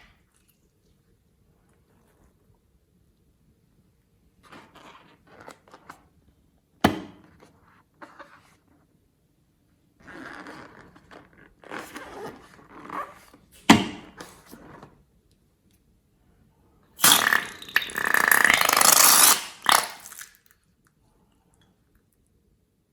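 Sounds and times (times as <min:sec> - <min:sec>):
sharp slime pops: 0:17.0 - 0:20.4
slime squeezed by hand: 0:17.0 - 0:20.4
sticky slime crackles: 0:17.0 - 0:20.4.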